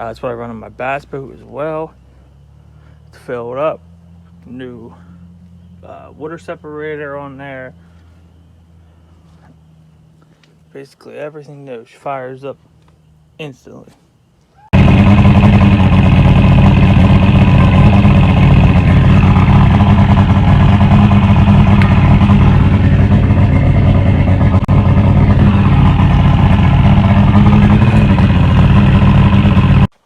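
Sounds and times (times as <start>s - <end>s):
outboard motor running: 14.8s - 30.0s.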